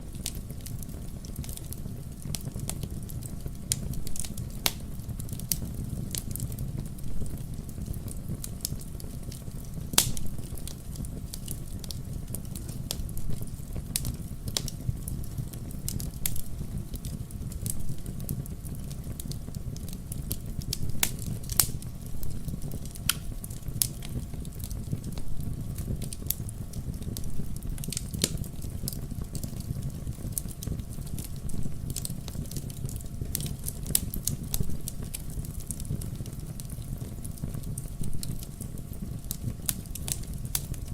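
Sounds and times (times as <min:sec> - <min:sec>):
campfire wood crackling and popping: 0:00.0 - 0:40.9
low rumble of flames: 0:00.0 - 0:40.9.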